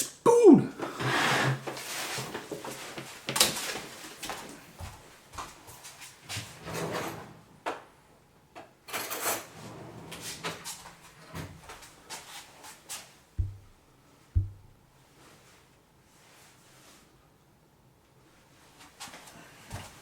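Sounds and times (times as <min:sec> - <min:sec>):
dull knocks: 0:13.4 - 0:14.8.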